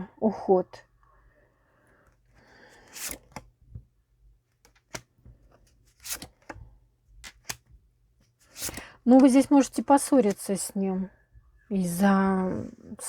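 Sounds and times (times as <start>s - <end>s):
cards clicking and rustling: 2.8s - 3.5s, 4.6s - 6.6s, 7.2s - 7.7s, 8.4s - 10.6s.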